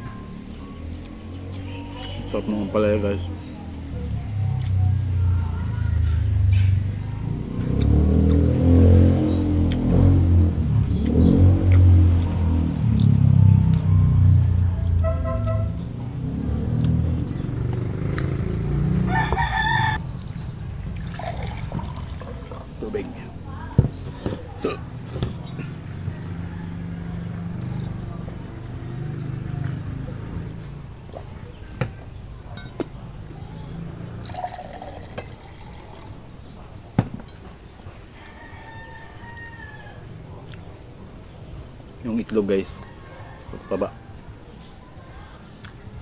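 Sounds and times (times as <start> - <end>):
rooster crowing: 18.0 - 20.0, 25.6 - 28.0, 37.9 - 40.5, 42.6 - 44.6
tableware clicking and knocking: 32.6 - 33.0.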